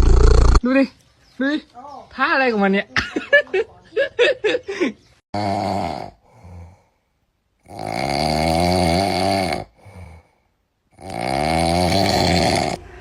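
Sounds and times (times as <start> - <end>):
cat snoring: 0.0 - 0.6, 7.6 - 10.2, 10.9 - 12.9.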